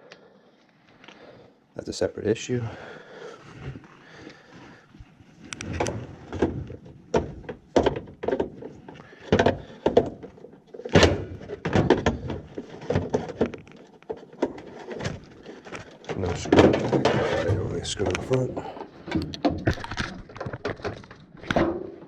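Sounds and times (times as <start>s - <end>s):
plastic and metal parts clunking: 5.4s - 22.0s.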